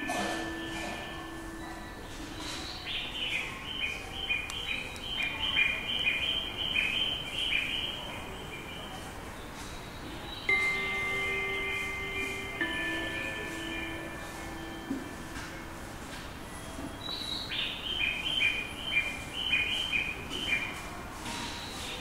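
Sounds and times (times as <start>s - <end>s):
electronic chime tone: 0.0s - 2.8s, 10.5s - 16.2s
recorded bird chirping: 0.0s - 20.8s.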